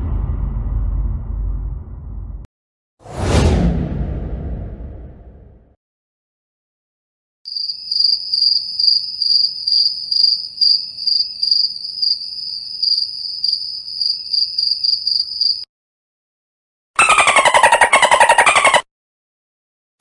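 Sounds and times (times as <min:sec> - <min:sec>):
crickets chirping: 0:07.5 - 0:15.7.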